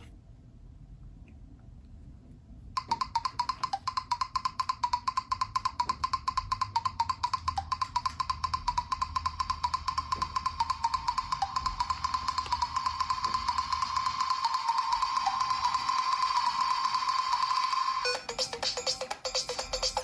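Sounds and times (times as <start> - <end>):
percussive strikes: 2.8 - 17.1
low beat: 2.8 - 20.0
ringtone melody: 2.8 - 20.0.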